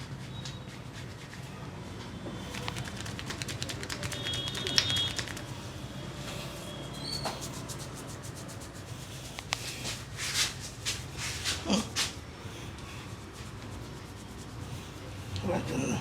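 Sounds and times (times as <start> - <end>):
hands rubbing and patting scalp: 2.4 - 5.7, 7.0 - 15.4.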